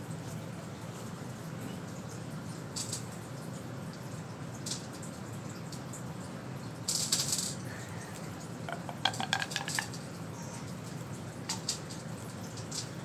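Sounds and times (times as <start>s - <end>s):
small hard clinks: 8.1s - 10.0s
toy clicks: 8.7s - 10.0s.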